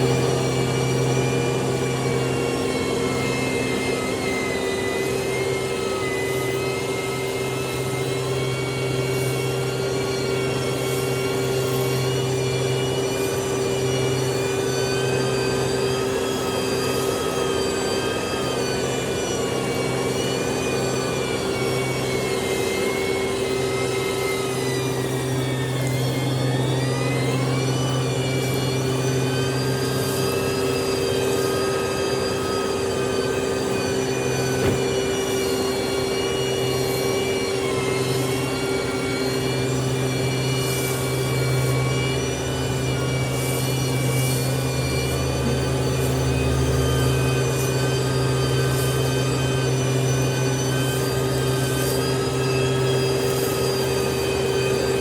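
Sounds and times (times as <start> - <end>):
heavy diesel engine under load: 34.4 - 35.3
single knock: 34.6 - 34.9.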